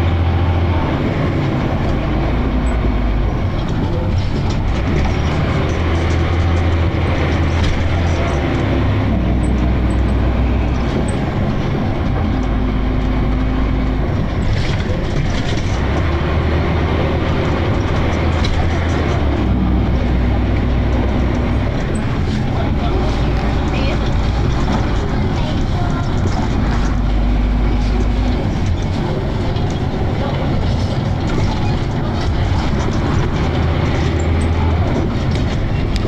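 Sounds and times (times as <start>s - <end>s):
bus engine running: 0.0s - 36.0s
mechanical grinding and rattling: 0.0s - 36.0s.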